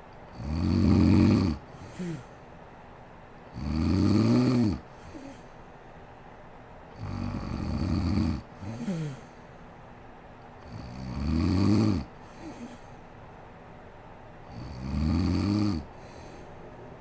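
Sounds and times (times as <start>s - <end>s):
woman snoring: 0.3s - 2.3s, 3.6s - 5.4s, 7.0s - 9.3s, 10.7s - 12.8s, 14.5s - 16.4s
breathy exhale falling in pitch: 1.8s - 2.4s.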